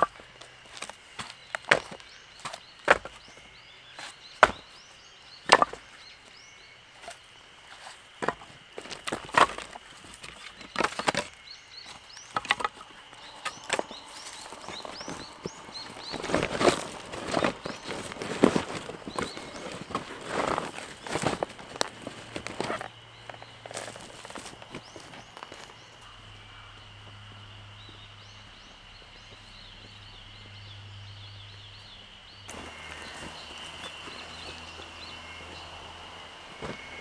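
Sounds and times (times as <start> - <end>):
firewood being split: 0.0 - 6.4, 7.0 - 26.1, 32.4 - 37.0
small birds chirping: 0.0 - 37.0.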